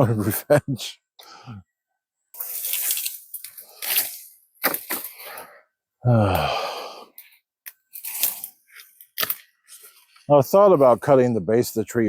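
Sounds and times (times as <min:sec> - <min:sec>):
dry branches crackling and snapping: 0:02.4 - 0:05.3, 0:07.9 - 0:10.0
vocal grunt: 0:06.0 - 0:06.9.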